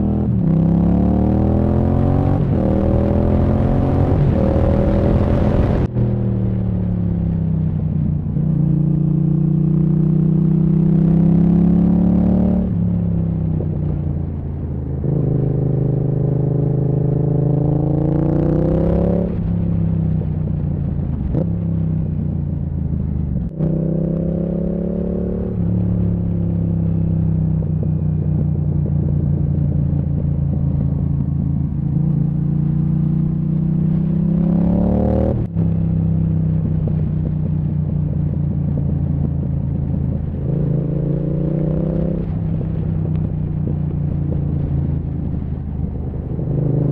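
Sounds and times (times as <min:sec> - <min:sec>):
motorcycle engine revving: 0:00.0 - 0:05.9, 0:23.4 - 0:46.9.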